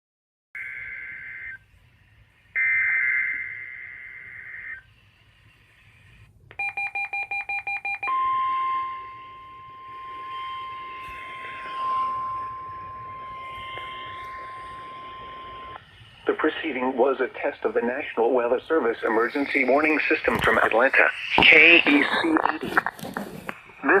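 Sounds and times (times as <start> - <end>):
steady warning alarm tone: 0.6 - 21.9
radio static: 2.6 - 5.0, 9.0 - 24.0
rapid beeps: 6.6 - 15.8.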